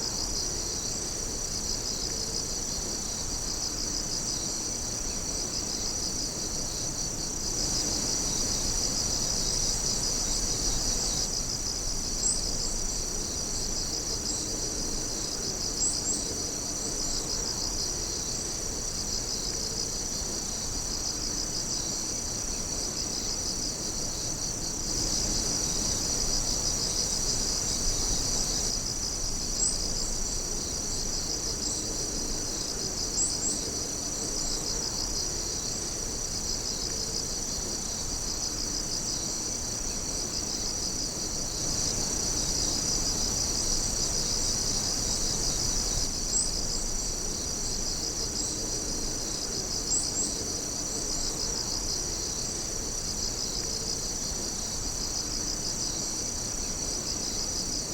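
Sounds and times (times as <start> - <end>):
night insects trilling: 0.0 - 57.9
sharp insect chirps: 24.2 - 30.7.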